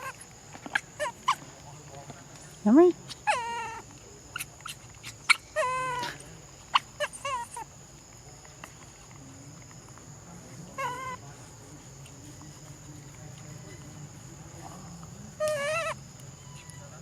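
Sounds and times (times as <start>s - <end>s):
baby monkey squeaky cries: 0.0s - 1.5s, 3.0s - 7.7s, 10.8s - 11.2s, 15.4s - 16.8s.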